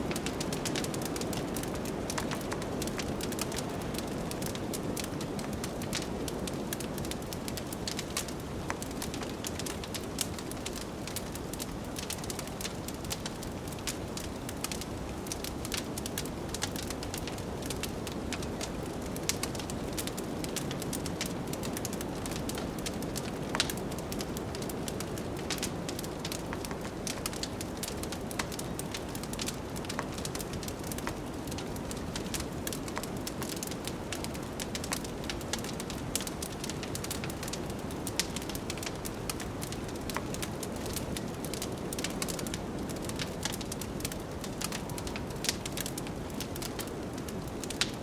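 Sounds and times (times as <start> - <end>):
wood fire crackling: 0.0 - 48.0.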